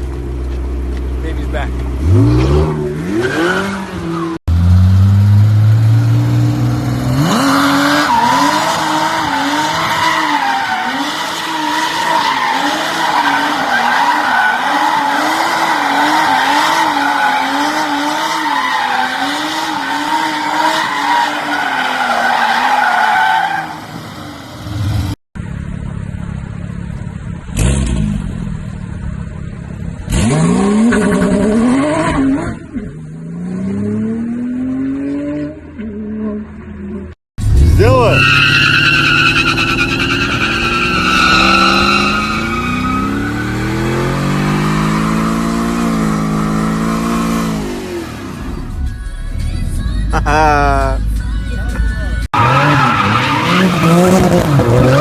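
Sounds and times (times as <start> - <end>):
car engine revving: 1.4 - 25.2, 29.6 - 48.8, 52.3 - 55.0
tyres squealing: 7.2 - 24.4.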